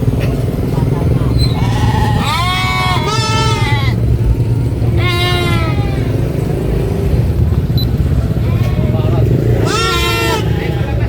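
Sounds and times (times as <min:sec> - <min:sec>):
steady low rumble: 0:00.0 - 0:11.0
livestock bleating: 0:01.6 - 0:04.0, 0:04.8 - 0:06.2, 0:08.4 - 0:10.8.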